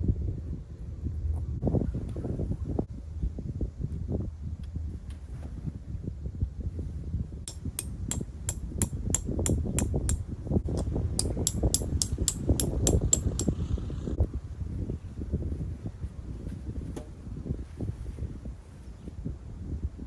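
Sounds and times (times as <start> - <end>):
low rumble of wind: 0.0 - 20.0
sharp clicking taps: 7.5 - 13.5.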